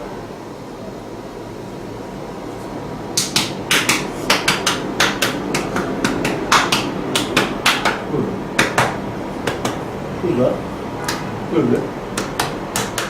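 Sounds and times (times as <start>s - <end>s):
sharp knocks: 3.2s - 9.8s, 12.2s - 13.0s.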